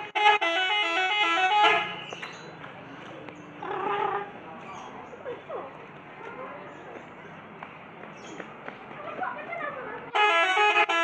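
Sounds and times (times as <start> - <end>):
musical air horn tune: 0.0 - 2.1, 10.1 - 11.0.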